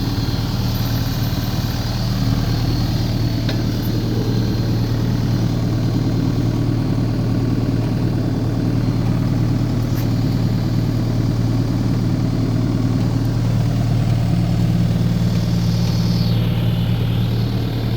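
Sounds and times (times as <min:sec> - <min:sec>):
diesel engine running: 0:00.0 - 0:17.9
falling high-pitched whine: 0:13.7 - 0:17.9.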